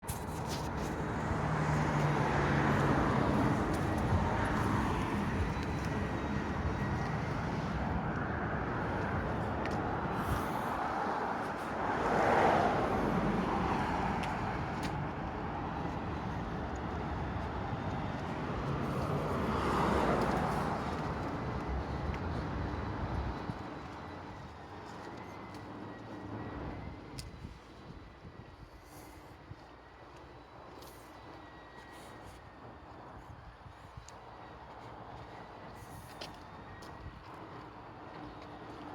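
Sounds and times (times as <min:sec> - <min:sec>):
strong gusty wind: 0:00.1 - 0:24.7.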